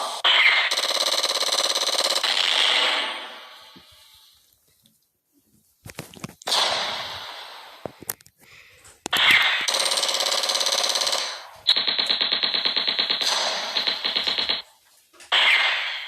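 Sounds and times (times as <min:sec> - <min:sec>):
machine-gun fire: 0:00.0 - 0:03.6, 0:06.5 - 0:07.9, 0:09.1 - 0:14.7, 0:15.3 - 0:16.0.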